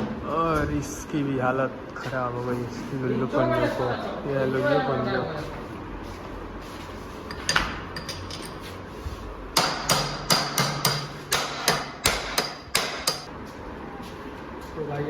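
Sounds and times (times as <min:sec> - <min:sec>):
hammer striking metal: 0:09.6 - 0:13.3.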